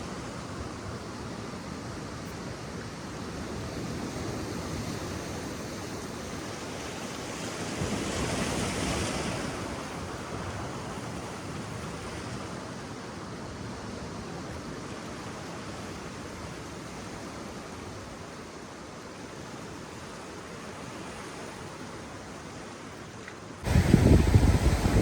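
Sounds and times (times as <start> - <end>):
ocean surf: 14.9 - 25.0.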